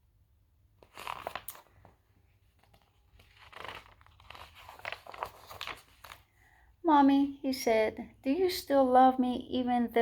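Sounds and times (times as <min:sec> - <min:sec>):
book pages rustling and turning: 0:00.7 - 0:06.6.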